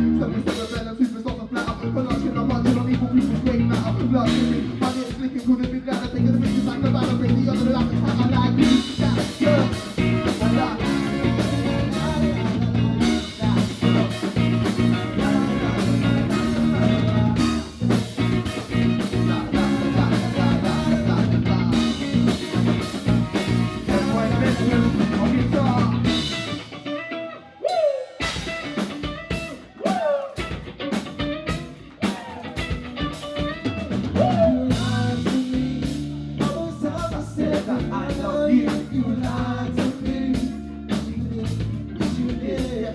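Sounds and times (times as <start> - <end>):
person singing: 0.0 - 26.4, 34.2 - 42.9
drum kit: 0.0 - 27.0, 27.7 - 42.9
guitar: 0.0 - 42.9
live band playing: 0.0 - 42.9.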